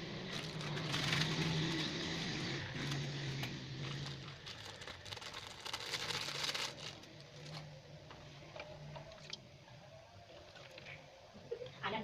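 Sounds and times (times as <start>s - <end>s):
packaging crinkling and rustling: 0.2s - 7.7s.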